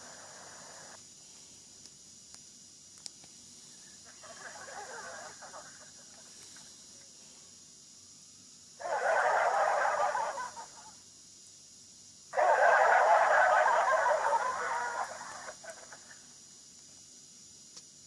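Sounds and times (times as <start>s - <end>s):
grainy hiss-like ringtone: 0.0s - 1.0s.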